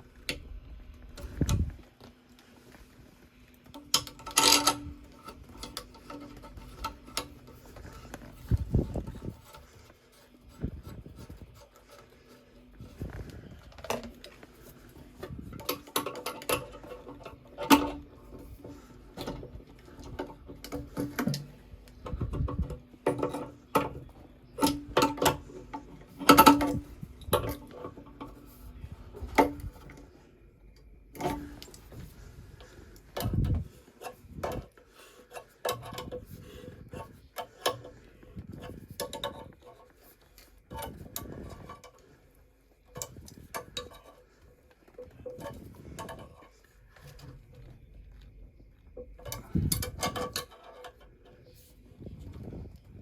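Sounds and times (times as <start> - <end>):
faint steady hum: 0.0 - 53.0
tools and hard parts clinking: 3.7 - 30.1, 49.0 - 51.5.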